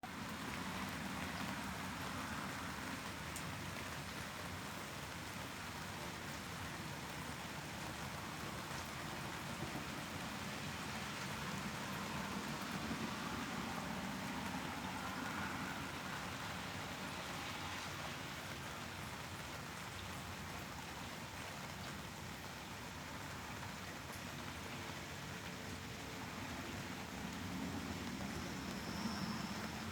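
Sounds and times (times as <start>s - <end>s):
steady rain hiss: 0.0s - 29.9s
faint raindrop ticks: 0.1s - 10.4s, 17.8s - 29.9s.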